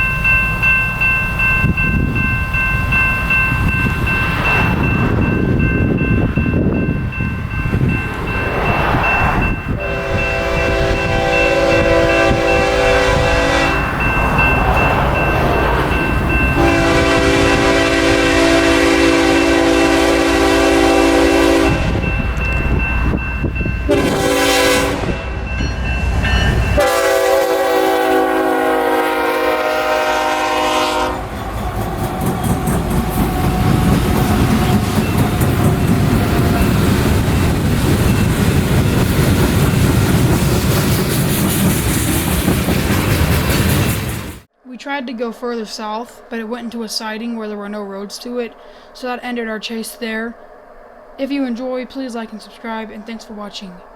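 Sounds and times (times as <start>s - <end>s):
train rumble and wheel noise: 0.0s - 44.6s
train air horn blasts: 9.7s - 14.1s, 16.6s - 22.1s, 23.9s - 25.4s, 26.8s - 31.4s.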